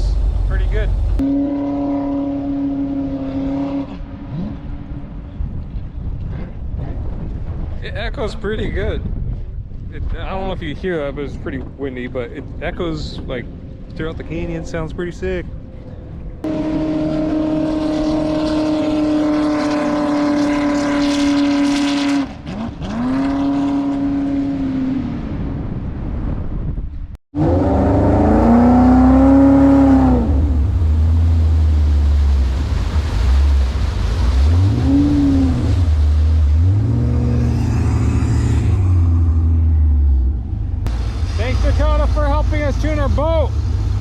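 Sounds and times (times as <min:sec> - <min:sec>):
boat engine revving: 0:00.0 - 0:05.3, 0:15.6 - 0:25.2, 0:27.3 - 0:44.0
deep engine rumble: 0:00.0 - 0:22.1, 0:24.0 - 0:44.0.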